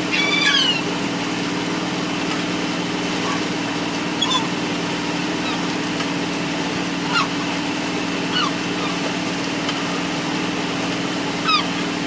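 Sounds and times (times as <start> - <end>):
gulls squawking: 0.0 - 1.0, 3.1 - 10.4, 11.3 - 12.0
low engine hum: 0.0 - 12.0.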